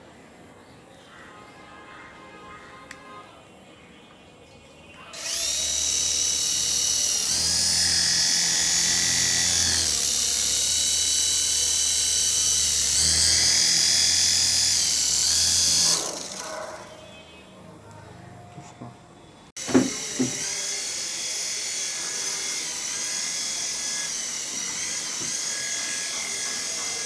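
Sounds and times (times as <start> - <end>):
toy helicopter motor whine: 5.1 - 17.1, 19.6 - 27.0.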